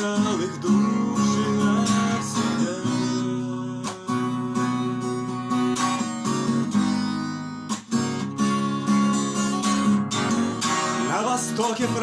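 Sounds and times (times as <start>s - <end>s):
strummed acoustic guitar chords: 0.0s - 12.0s.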